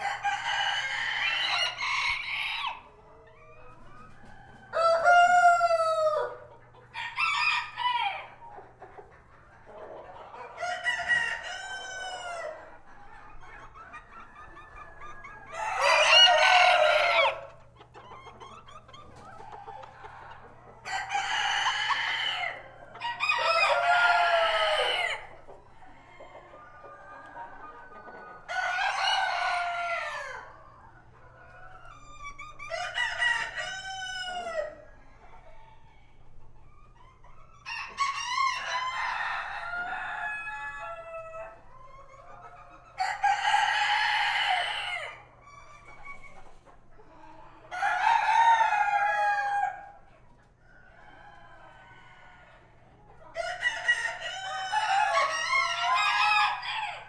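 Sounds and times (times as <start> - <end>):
roosters crowing: 0.0 - 2.9, 4.2 - 8.4, 10.4 - 12.7, 14.9 - 17.7, 19.4 - 27.3, 28.3 - 30.7, 32.7 - 35.0, 37.6 - 41.6, 42.9 - 45.4, 47.7 - 50.0, 53.4 - 57.0
hens clucking softly: 0.0 - 57.0.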